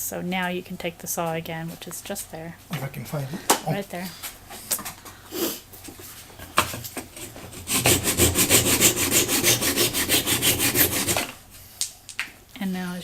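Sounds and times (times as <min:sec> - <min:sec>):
hand saw cutting wood: 0:07.1 - 0:11.4.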